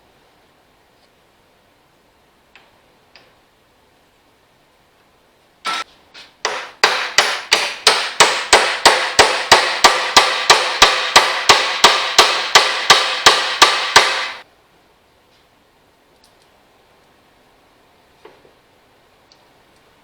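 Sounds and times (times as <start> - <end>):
hammer striking metal: 6.4 - 14.4.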